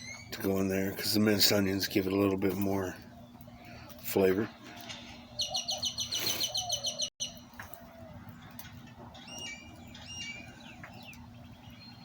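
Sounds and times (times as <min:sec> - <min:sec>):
steady low hum: 0:00.0 - 0:12.0
faint bird chirping: 0:02.8 - 0:12.0.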